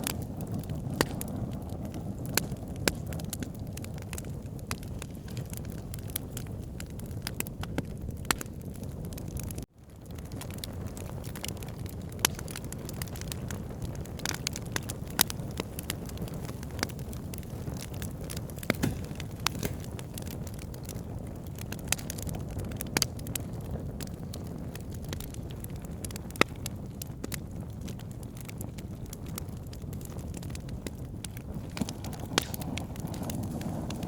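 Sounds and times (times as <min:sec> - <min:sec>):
campfire crackling: 0:00.0 - 0:34.0
wood popping and snapping: 0:14.1 - 0:22.3, 0:30.0 - 0:34.0.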